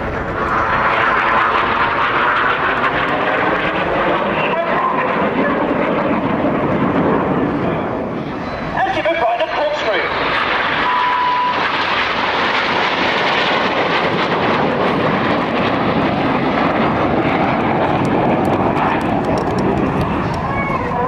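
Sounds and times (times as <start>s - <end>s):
jets flying over: 0.0s - 21.0s.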